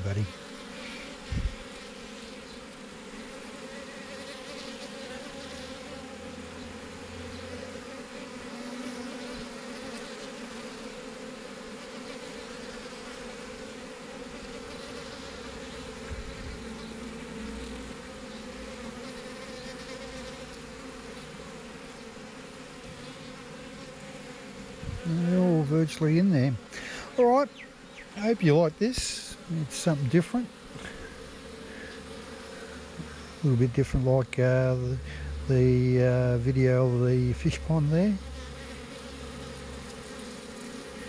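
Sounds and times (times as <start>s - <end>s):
bees buzzing: 0.0s - 41.0s.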